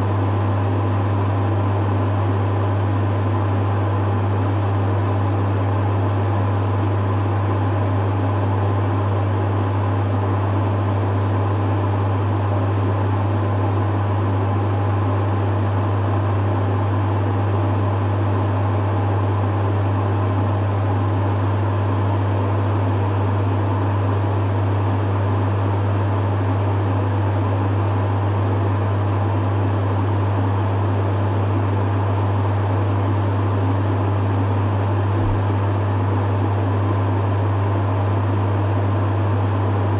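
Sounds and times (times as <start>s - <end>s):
dehumidifier hum: 0.0s - 39.9s
fan air rushing: 33.4s - 36.9s.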